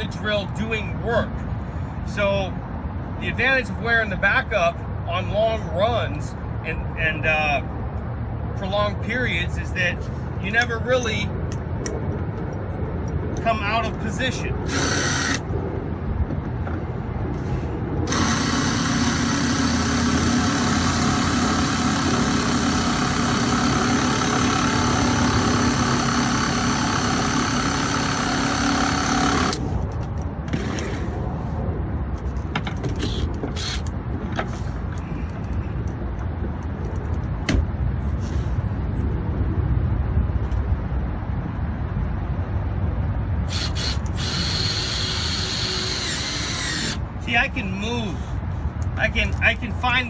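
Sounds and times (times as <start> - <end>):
electric drill running: 14.6 - 15.4, 18.1 - 29.6, 33.1 - 33.9, 43.5 - 47.0.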